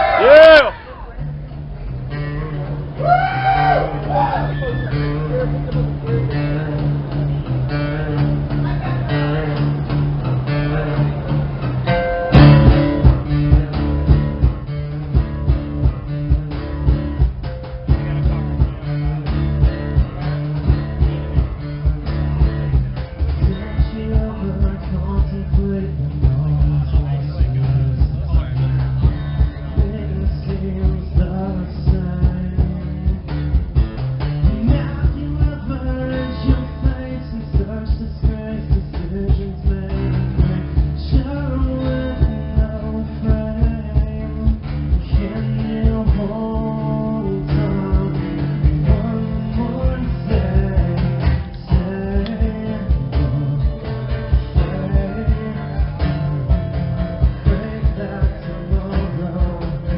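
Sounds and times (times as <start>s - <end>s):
strummed acoustic guitar: 0.6s - 3.0s, 3.8s - 59.9s
steady drum beat: 2.8s - 59.9s
person singing: 34.4s - 59.9s.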